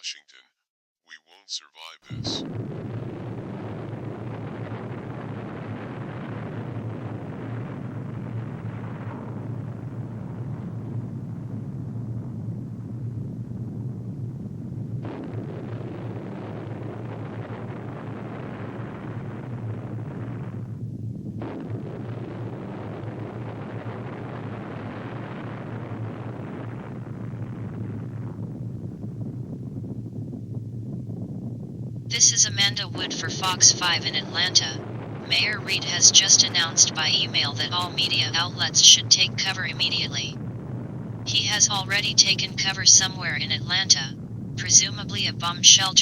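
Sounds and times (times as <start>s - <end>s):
low rumbling roar of detonation: 2.2s - 32.7s, 40.4s - 41.3s, 43.7s - 44.6s.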